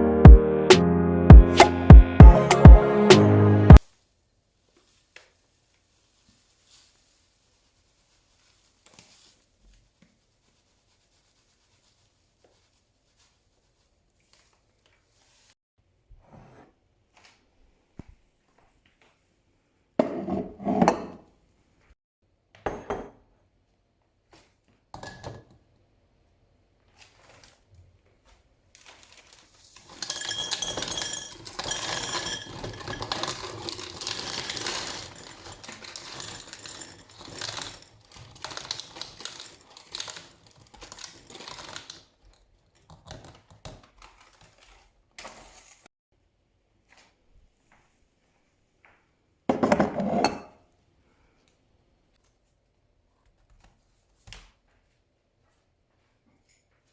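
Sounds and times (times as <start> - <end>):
dishes clinking and clattering: 29.9 - 37.8.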